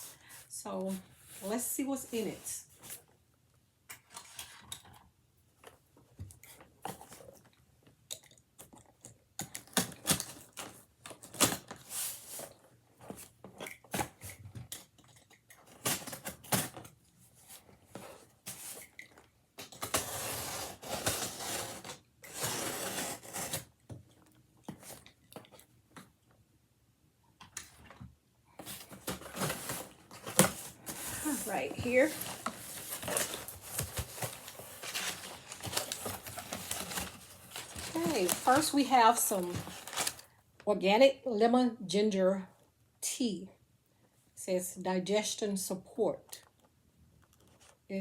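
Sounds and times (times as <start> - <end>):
packing tape tearing: 9.5 - 12.0, 19.6 - 23.7, 28.8 - 40.2
cardboard rustling: 28.6 - 40.3.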